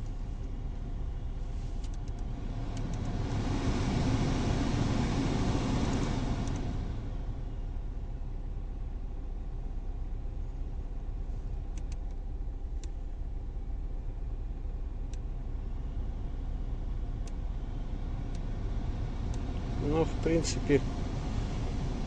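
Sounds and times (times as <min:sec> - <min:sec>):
heater blower fan whirring: 0:00.0 - 0:22.0
faint clicks: 0:01.8 - 0:03.2, 0:11.7 - 0:13.0.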